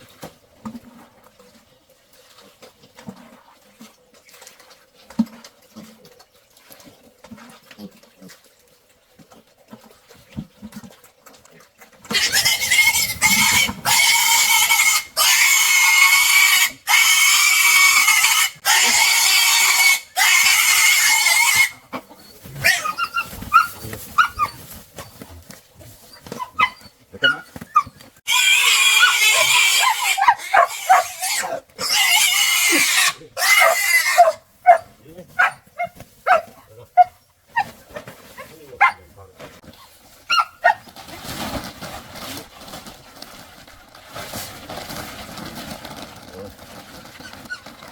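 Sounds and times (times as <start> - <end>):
pigs squealing: 12.1 - 24.6, 26.3 - 34.8
pigs grunting: 12.1 - 24.7, 28.3 - 35.6.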